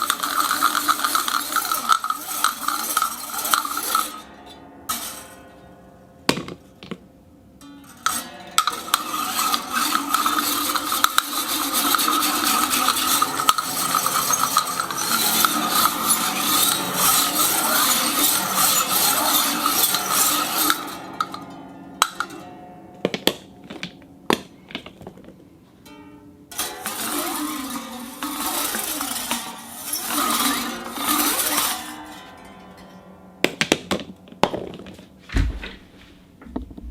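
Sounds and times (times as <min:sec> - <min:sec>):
ball rolling in glass cup: 0:00.0 - 0:04.2, 0:08.6 - 0:21.4.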